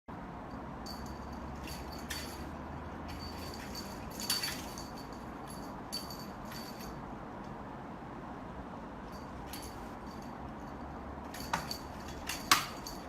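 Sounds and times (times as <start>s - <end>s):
light clinks with high ring: 0.8s - 7.0s, 9.1s - 13.0s.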